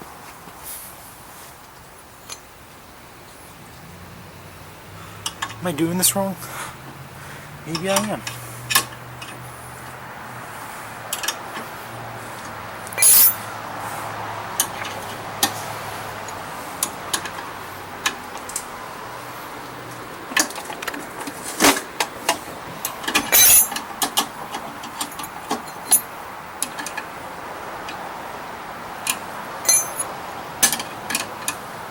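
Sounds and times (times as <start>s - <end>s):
steady low hiss: 0.0s - 31.9s
sharp clicks and clinks: 12.9s - 13.4s, 23.1s - 23.8s, 29.6s - 31.3s.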